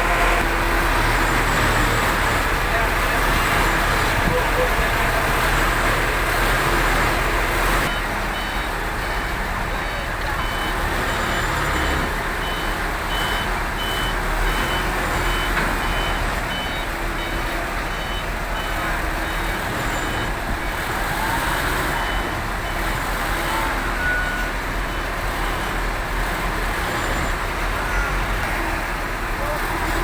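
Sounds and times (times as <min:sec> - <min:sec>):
diesel engine running: 0:00.0 - 0:30.0
crane warning beeper: 0:07.8 - 0:20.4, 0:21.3 - 0:25.7.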